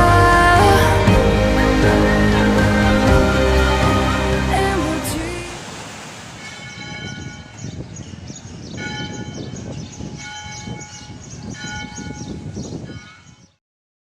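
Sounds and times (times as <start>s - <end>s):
church bells ringing: 10.2s - 12.3s.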